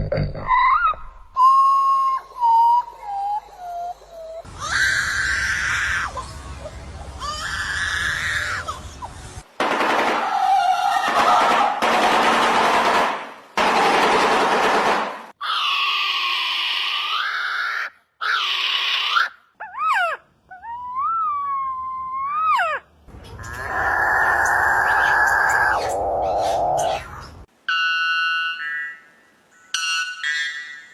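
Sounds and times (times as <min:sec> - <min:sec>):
bird calls: 0:23.1 - 0:27.5.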